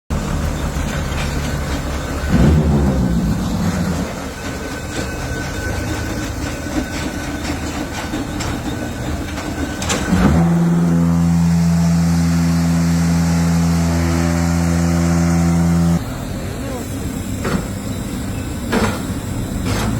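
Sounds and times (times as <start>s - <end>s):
block machine rattling and clanking: 0.1s - 10.9s
loud steady hum: 0.1s - 19.9s.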